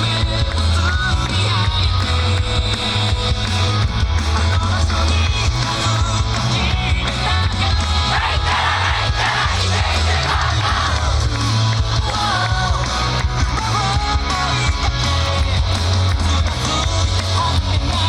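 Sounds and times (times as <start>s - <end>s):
rock dance music: 0.0s - 18.0s
people shouting: 8.0s - 11.2s.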